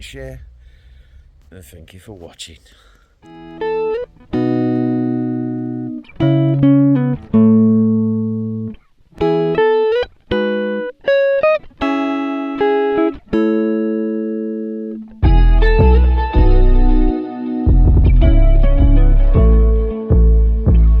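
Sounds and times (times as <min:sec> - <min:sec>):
plucked string music: 0:03.3 - 0:21.0
deep bass music: 0:15.2 - 0:21.0.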